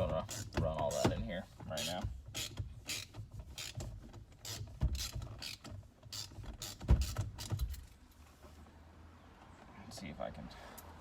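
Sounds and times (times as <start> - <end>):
socket ratchet clicking: 1.8 - 3.8, 4.4 - 7.8.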